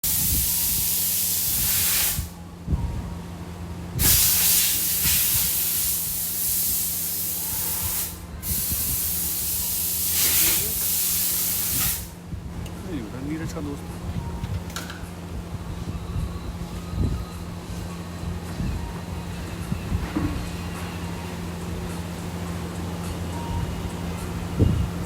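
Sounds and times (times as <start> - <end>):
pressurised spray hissing: 0.0 - 2.4, 4.0 - 12.2
steady low hum: 0.0 - 25.0.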